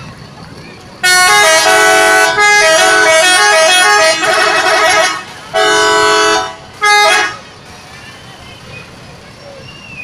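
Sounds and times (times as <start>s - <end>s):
multi-tone musical air horn: 1.0s - 7.4s.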